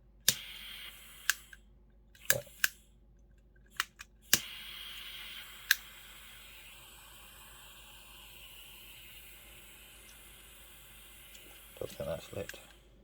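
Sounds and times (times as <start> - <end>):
soldering iron ignition clicks: 0.2 - 2.9, 3.7 - 6.2, 11.3 - 12.8
gas hissing: 0.3 - 1.6, 2.2 - 2.9, 3.7 - 12.8.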